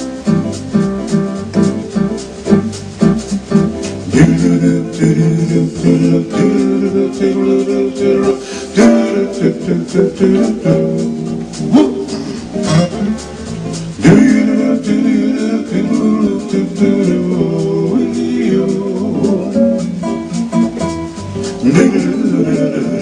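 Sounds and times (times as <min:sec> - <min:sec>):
electronic keyboard plucked chords: 0:00.0 - 0:07.1, 0:09.8 - 0:15.6.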